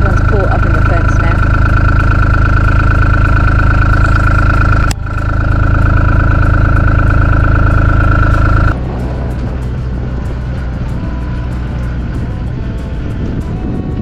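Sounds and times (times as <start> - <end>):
vehicle engine running: 0.0 - 14.0.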